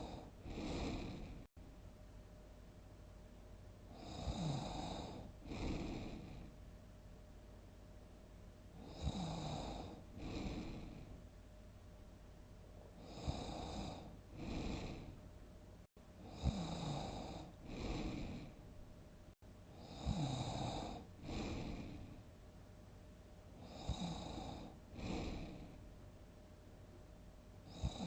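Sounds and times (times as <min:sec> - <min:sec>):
person snoring loudly: 0:00.0 - 0:01.5, 0:04.0 - 0:06.5, 0:08.8 - 0:11.1, 0:13.0 - 0:15.2, 0:16.3 - 0:18.6, 0:19.8 - 0:22.1, 0:23.6 - 0:25.8, 0:27.7 - 0:28.0.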